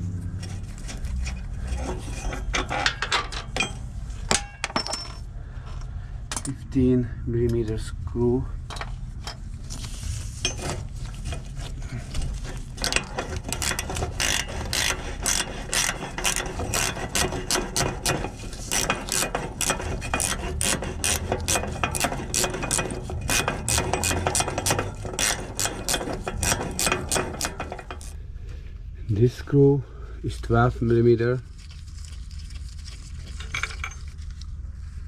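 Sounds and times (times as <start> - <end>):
ratchet wrench clicking: 12.8 - 28.1.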